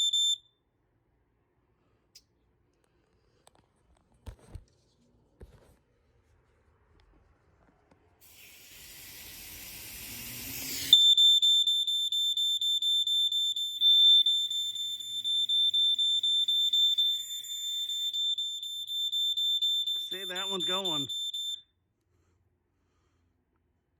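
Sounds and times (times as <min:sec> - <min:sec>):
smoke alarm pulsing beep: 0:00.0 - 0:00.6, 0:10.7 - 0:21.7
aerosol can spraying: 0:08.2 - 0:11.0.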